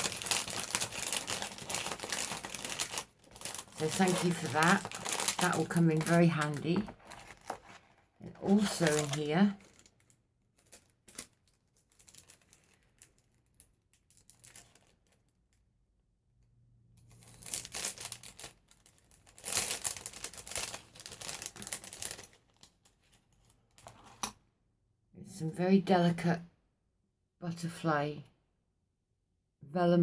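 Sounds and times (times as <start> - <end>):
crinkly wrapping rustling: 0.0 - 15.4, 17.1 - 24.2.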